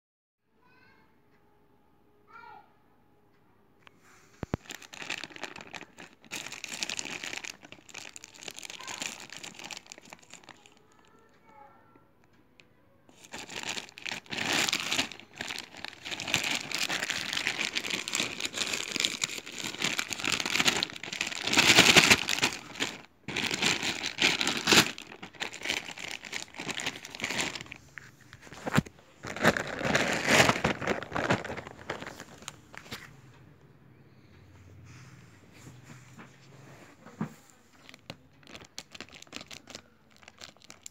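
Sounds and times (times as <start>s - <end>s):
packaging crinkling and rustling: 4.4s - 10.8s, 13.1s - 33.1s, 37.7s - 40.9s.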